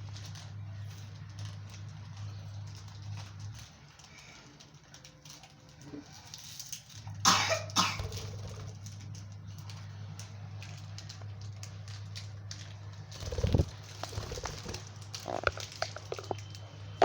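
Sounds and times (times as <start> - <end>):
steady low hum: 0.0 - 17.0
person coughing: 7.3 - 8.2.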